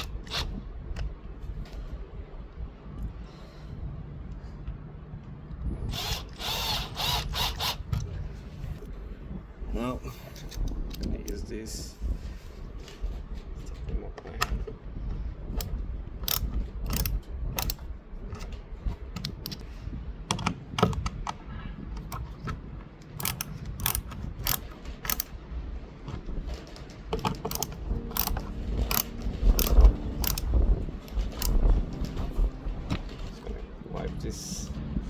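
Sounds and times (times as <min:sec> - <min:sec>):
screwdriver clicking: 0:16.2 - 0:17.8, 0:19.2 - 0:19.6, 0:23.0 - 0:25.3, 0:27.2 - 0:31.7.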